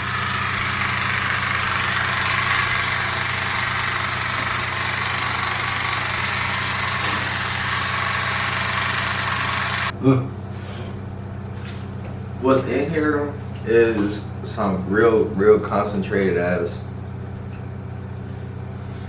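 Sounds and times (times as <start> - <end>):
pulsing water jet hissing: 0.0 - 9.9
pump motor humming: 0.0 - 10.0.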